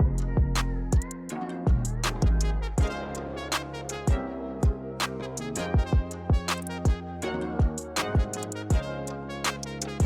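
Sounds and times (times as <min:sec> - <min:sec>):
kick drum beat: 0:00.0 - 0:01.1, 0:04.1 - 0:04.8, 0:05.8 - 0:07.0.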